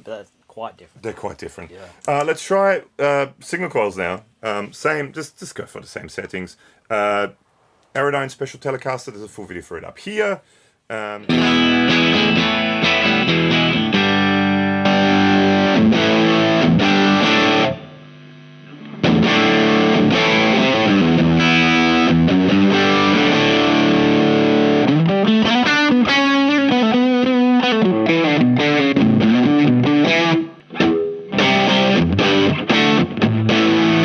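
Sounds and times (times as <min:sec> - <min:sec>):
distorted electric guitar: 0:11.2 - 0:34.0.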